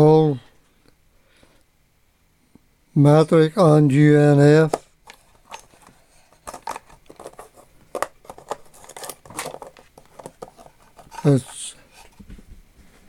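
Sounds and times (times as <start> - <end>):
metal tools clinking in drawer: 6.4 - 11.7.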